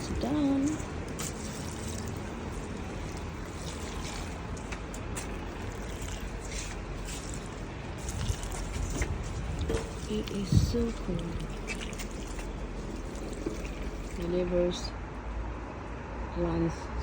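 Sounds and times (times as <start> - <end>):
strong wind buffeting microphone: 7.8 - 11.6.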